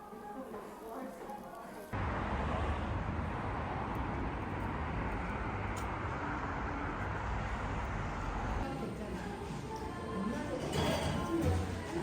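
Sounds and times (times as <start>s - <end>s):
vehicle rumble and road noise: 2.0s - 8.9s.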